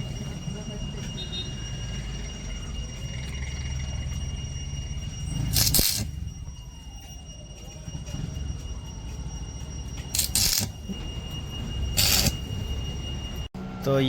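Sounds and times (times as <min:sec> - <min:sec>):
electric welding crackling hum: 0:05.5 - 0:06.2, 0:10.1 - 0:10.9, 0:11.9 - 0:12.7.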